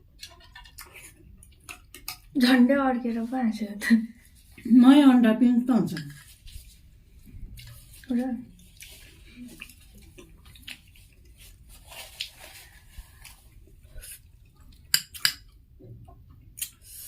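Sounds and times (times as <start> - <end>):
chewing and mouth sounds: 0.1 - 2.4, 7.2 - 17.0.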